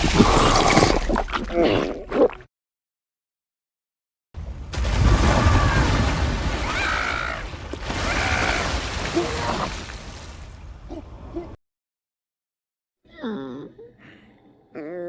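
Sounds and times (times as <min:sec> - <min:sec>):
heavy rumble with crashes: 0:04.4 - 0:10.8.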